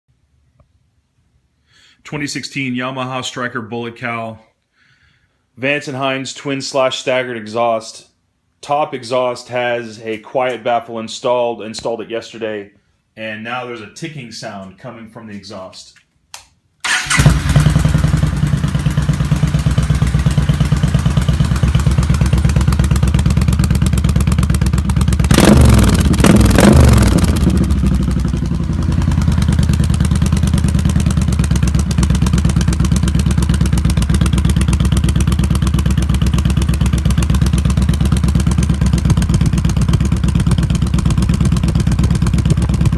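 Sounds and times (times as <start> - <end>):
exhaust ticking: 16.9 - 42.9
motorcycle engine idling: 16.9 - 42.9.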